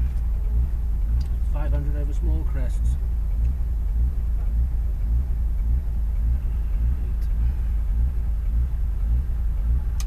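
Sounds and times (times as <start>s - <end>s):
car engine low rumble: 0.0s - 10.0s.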